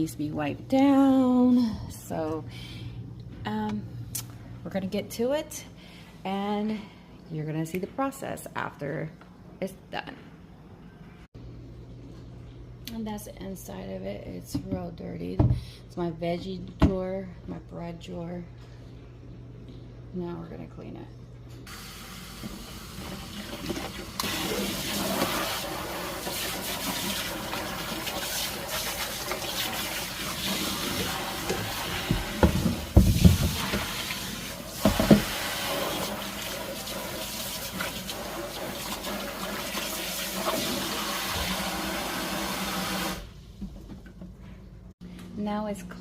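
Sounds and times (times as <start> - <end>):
water running into sink: 21.7 - 43.3.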